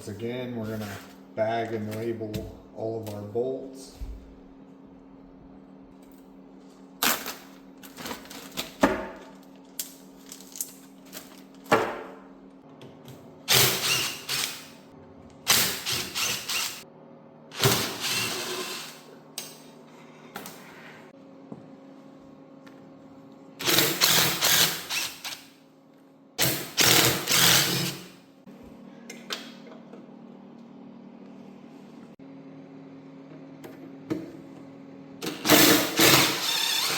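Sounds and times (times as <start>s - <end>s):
steady low hum: 0.0s - 18.3s
power tool bursts: 13.5s - 14.8s, 15.5s - 16.8s, 23.6s - 25.5s, 26.4s - 28.1s, 35.2s - 36.9s.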